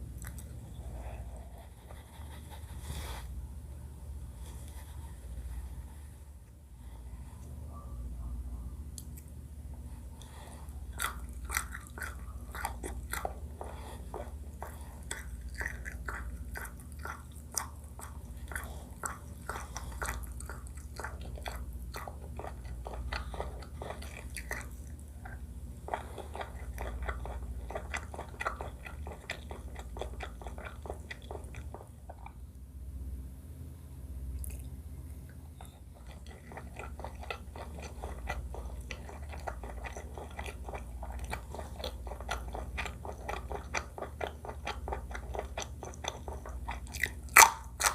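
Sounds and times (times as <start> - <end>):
close-miked chewing: 0.0 - 2.8, 7.3 - 32.6, 34.3 - 47.9
steady low hum: 0.0 - 47.9
wet mouth clicks and smacks: 34.4 - 34.7.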